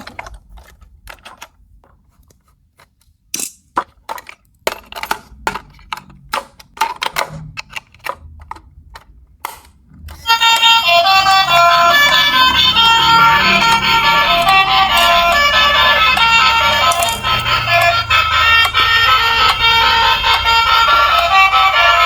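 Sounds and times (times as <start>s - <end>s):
plastic toys clicking and knocking: 0.0s - 22.0s
electronic toy melody: 10.1s - 22.0s.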